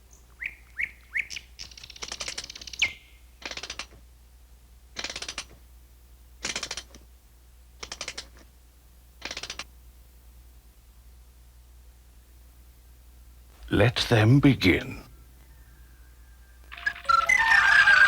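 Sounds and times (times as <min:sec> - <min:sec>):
bird trilling: 0:16.7 - 0:18.0.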